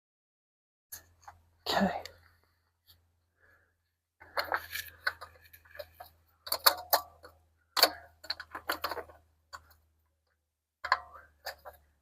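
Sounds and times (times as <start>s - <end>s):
oil filter clicks and knocks: 4.2s - 9.8s.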